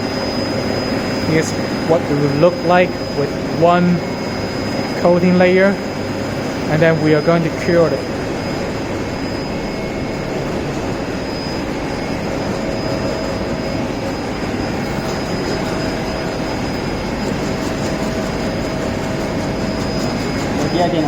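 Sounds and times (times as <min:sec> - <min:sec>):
high-pitched whine: 0:00.0 - 0:21.0
machinery drone: 0:00.0 - 0:21.0.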